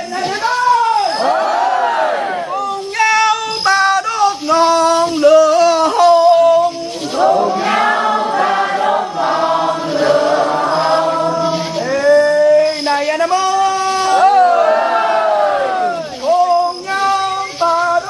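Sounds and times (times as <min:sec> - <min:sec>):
young voices chanting: 0:00.0 - 0:02.7, 0:06.8 - 0:12.3, 0:14.0 - 0:18.0
many voices singing: 0:00.0 - 0:18.0.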